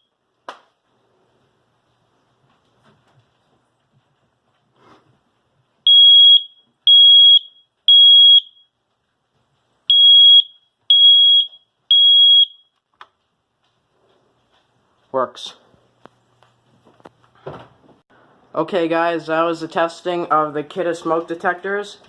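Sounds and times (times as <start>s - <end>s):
smoke alarm beeps: 5.8s - 8.8s, 9.9s - 12.8s.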